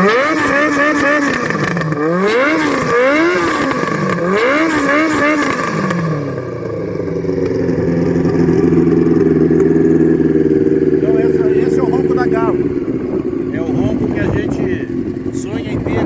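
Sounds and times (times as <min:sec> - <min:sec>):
motorcycle engine idling: 0:00.0 - 0:16.0
motorcycle engine revving: 0:00.0 - 0:16.0.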